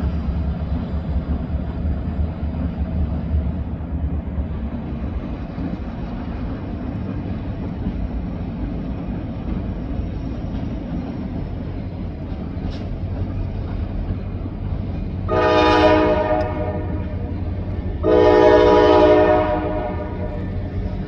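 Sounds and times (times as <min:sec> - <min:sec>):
locomotive air horn blasts: 0:15.3 - 0:17.3, 0:18.0 - 0:20.6.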